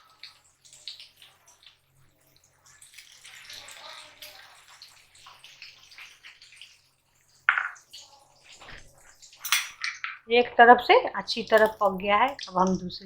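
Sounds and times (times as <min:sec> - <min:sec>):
kebabs sizzling in oil: 0:00.0 - 0:13.0.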